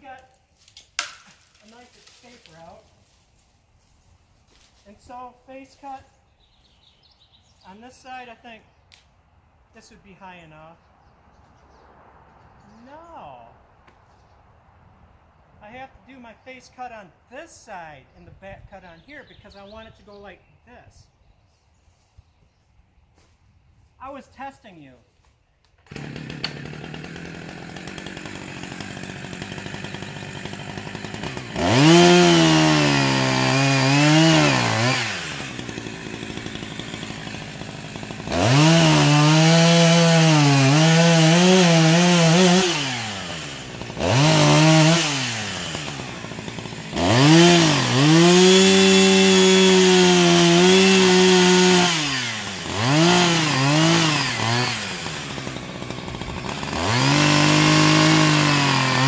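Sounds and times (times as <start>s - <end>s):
chainsaw idling and revving: 25.8s - 59.0s.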